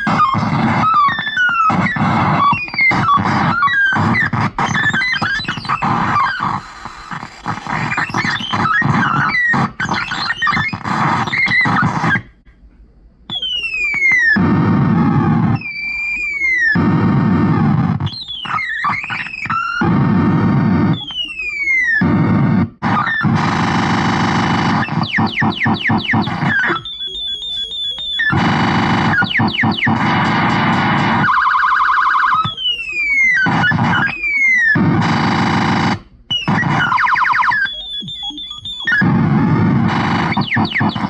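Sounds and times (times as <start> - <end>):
falling electronic whistles: 0.0 - 12.3, 13.3 - 41.0
rasping noise bursts: 0.0 - 12.3, 16.7 - 21.1, 22.0 - 27.0, 28.2 - 32.7, 33.3 - 41.0
warbling alarm tone: 0.0 - 12.3, 13.3 - 41.0
ray gun zaps: 23.0 - 41.0.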